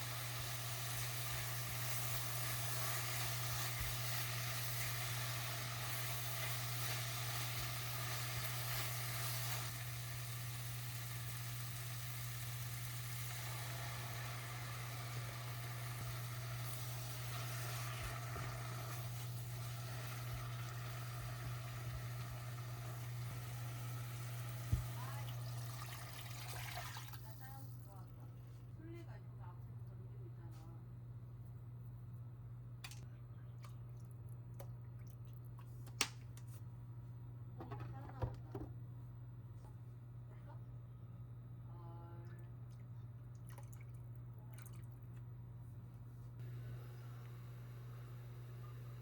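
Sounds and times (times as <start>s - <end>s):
food sizzling in frying pan: 0.0s - 25.5s.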